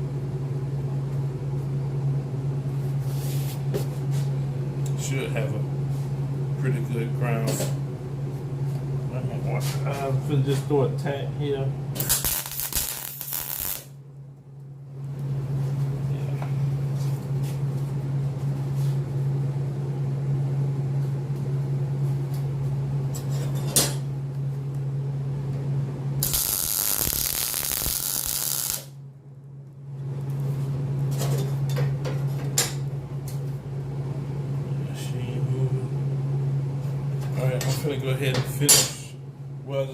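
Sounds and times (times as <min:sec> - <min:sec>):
electric welder humming: 0:11.9 - 0:14.0, 0:26.1 - 0:29.0
crackling weld arc: 0:12.0 - 0:14.0, 0:26.2 - 0:29.0.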